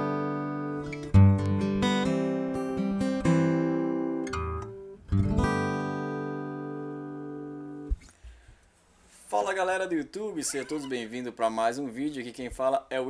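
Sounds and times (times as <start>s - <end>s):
acoustic guitar playing: 0.0s - 8.0s, 10.4s - 11.1s.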